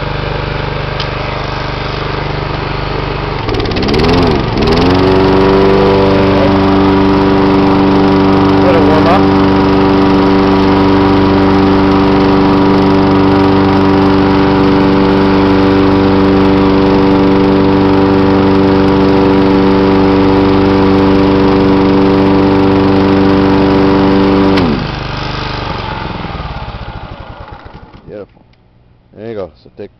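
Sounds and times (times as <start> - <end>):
lawn mower engine running: 0.0 - 29.0.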